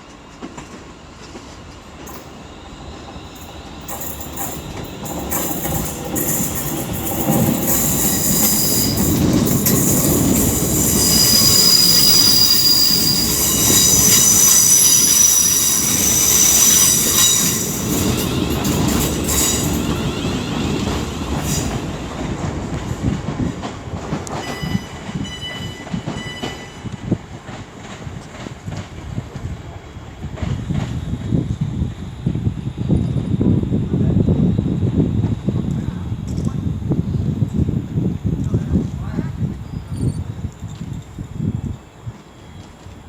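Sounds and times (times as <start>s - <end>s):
train rumble: 0.0s - 43.0s
train wheels squealing: 2.1s - 22.1s, 24.3s - 27.2s, 39.6s - 43.0s.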